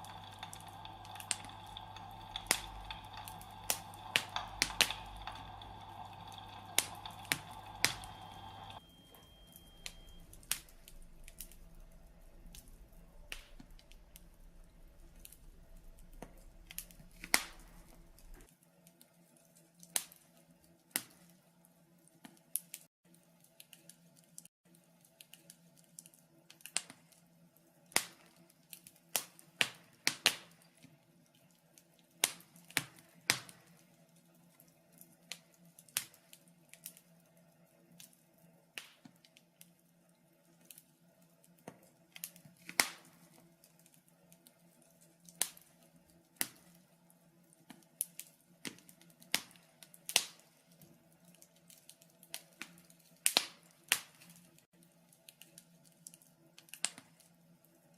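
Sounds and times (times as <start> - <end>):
steady low hum: 0.0 - 18.5
wood fire crackling and popping: 0.0 - 57.9.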